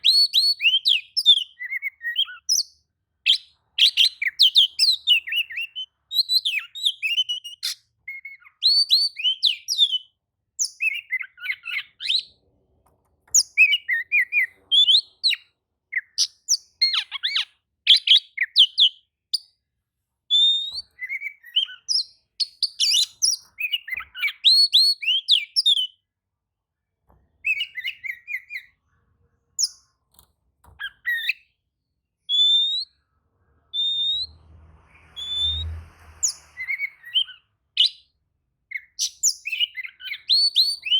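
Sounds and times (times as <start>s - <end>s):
bird singing whistles and chirps: 0.0s - 12.3s, 13.3s - 19.5s, 20.3s - 26.0s, 27.4s - 28.8s, 30.8s - 31.6s, 32.2s - 33.0s, 33.7s - 40.9s
faint low rumble: 33.1s - 37.1s.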